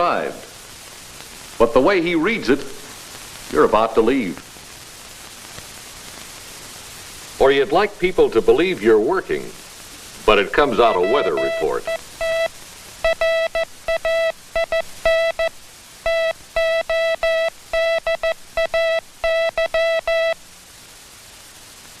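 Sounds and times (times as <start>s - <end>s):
morse code beeps: 10.8s - 15.5s, 16.1s - 20.4s.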